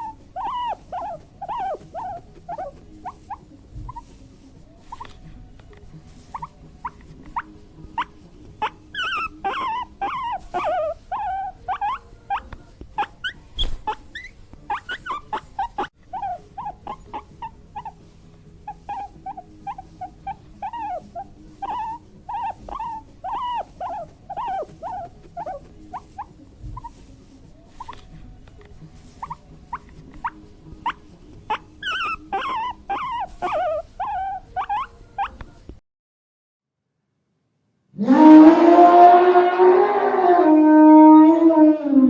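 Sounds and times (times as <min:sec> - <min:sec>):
small animal squeaking and whining: 0:00.0 - 0:04.2, 0:04.8 - 0:05.3, 0:06.2 - 0:27.1, 0:27.7 - 0:28.2, 0:29.0 - 0:35.6.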